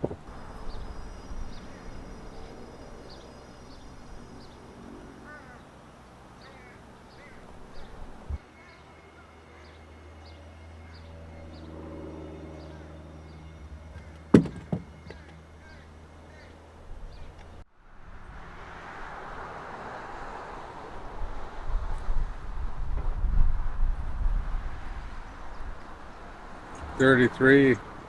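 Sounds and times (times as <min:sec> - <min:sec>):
birds calling: 0:00.0 - 0:17.6
sharp knock: 0:14.3 - 0:15.3.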